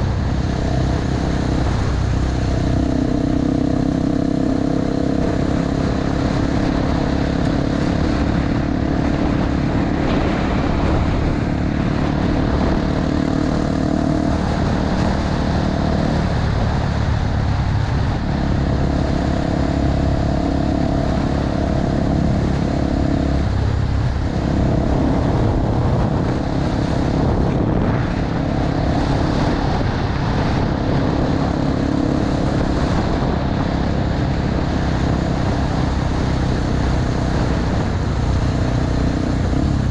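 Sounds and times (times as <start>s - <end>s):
motorcycle engine running: 0.0s - 39.9s
road noise: 0.0s - 39.9s.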